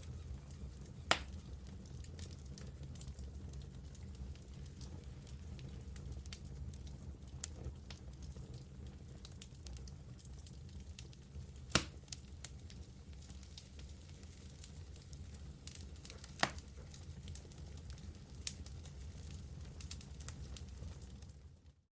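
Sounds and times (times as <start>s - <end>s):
fire flames rumbling: 0.0s - 21.8s
wood fire crackling: 0.0s - 21.9s
loud pop of burning wood: 1.0s - 1.4s, 11.7s - 12.2s, 15.7s - 17.0s.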